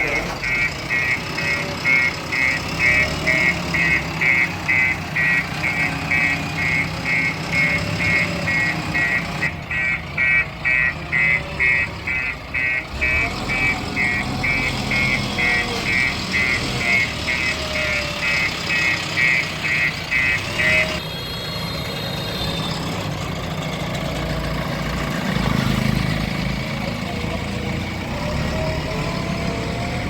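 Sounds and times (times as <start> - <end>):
reversing alarm beeping: 0.0 - 23.1
diesel engine running: 0.0 - 30.0.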